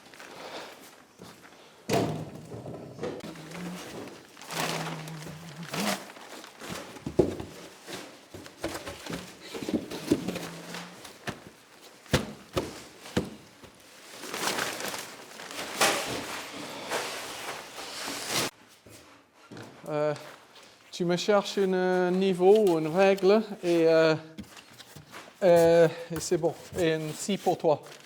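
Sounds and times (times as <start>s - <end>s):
boards scraping and rustling: 3.2s - 18.5s, 22.4s - 28.0s
footsteps: 3.2s - 20.8s
knocks and thuds: 6.6s - 13.8s.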